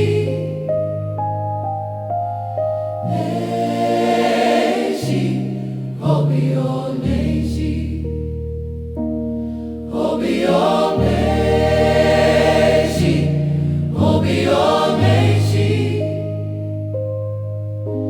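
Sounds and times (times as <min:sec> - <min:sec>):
gospel choir singing: 0:00.0 - 0:00.8, 0:03.0 - 0:08.2, 0:09.9 - 0:16.7
held instrumental chords: 0:00.0 - 0:18.0.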